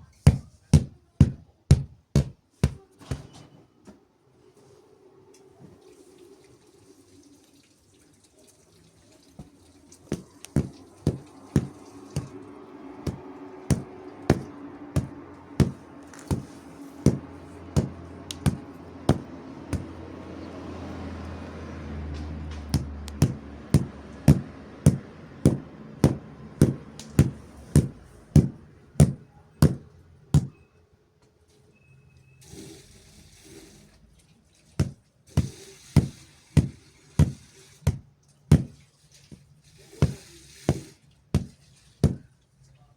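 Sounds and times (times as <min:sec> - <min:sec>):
bedding being beaten: 0:00.3 - 0:03.3, 0:10.1 - 0:12.4, 0:13.0 - 0:20.0, 0:22.6 - 0:30.6, 0:34.8 - 0:38.8, 0:40.0 - 0:42.3.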